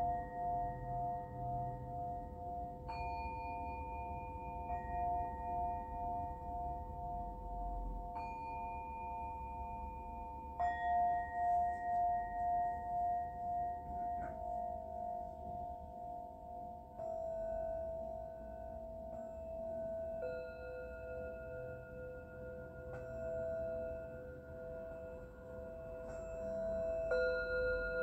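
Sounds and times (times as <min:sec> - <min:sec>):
low pulsing bowl tone: 0:00.0 - 0:28.0
singing bowls ringing: 0:00.0 - 0:28.0.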